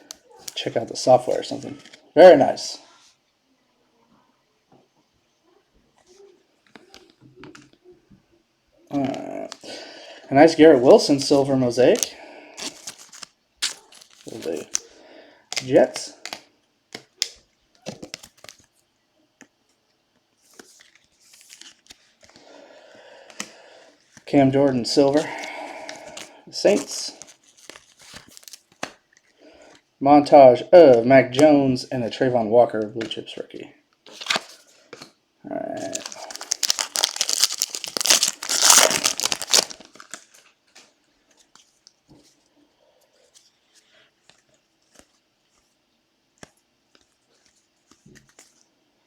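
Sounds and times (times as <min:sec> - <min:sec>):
foil wrapper crinkling: 0:10.9 - 0:14.9, 0:25.2 - 0:29.2, 0:35.8 - 0:40.6.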